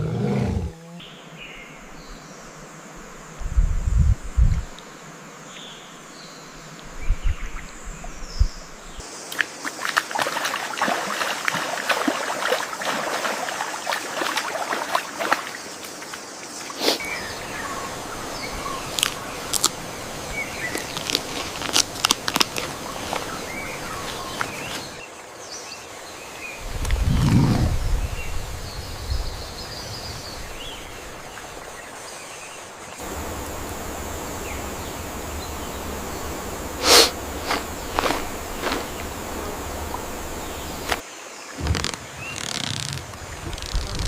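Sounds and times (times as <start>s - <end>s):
rustling and crunching: 18.8s - 25.0s, 35.9s - 41.0s, 41.6s - 44.0s.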